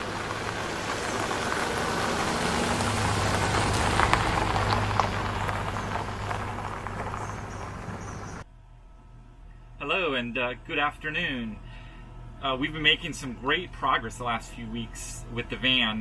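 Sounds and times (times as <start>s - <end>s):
rain-like hiss: 0.0s - 8.4s
steady low hum: 4.8s - 16.0s.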